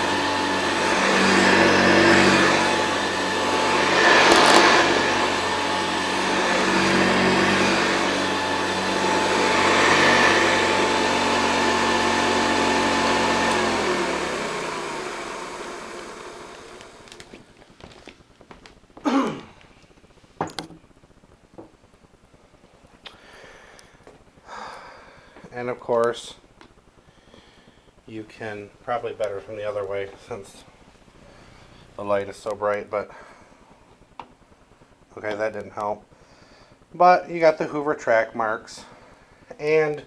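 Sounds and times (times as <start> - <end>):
vacuum motor winding down: 0.0 - 17.5
vacuum cleaner running: 0.0 - 18.2, 27.3 - 33.8.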